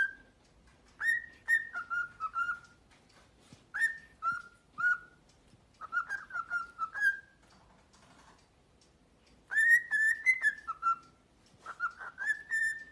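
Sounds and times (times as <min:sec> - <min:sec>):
cockatiel whistling: 0:00.0 - 0:02.8, 0:03.4 - 0:07.4, 0:09.5 - 0:12.9.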